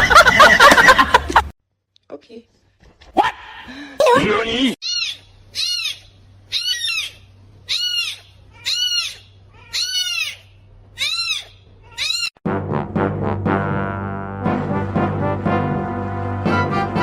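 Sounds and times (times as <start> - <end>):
small animal high-pitched cries: 4.8 - 12.4.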